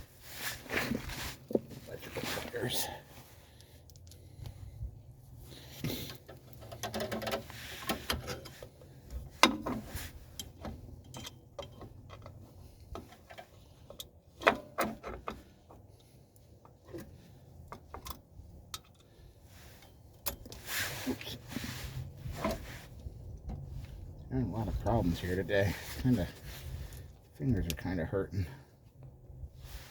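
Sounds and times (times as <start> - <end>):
metallic clicks of brake hardware: 3.6 - 4.6, 6.1 - 20.7.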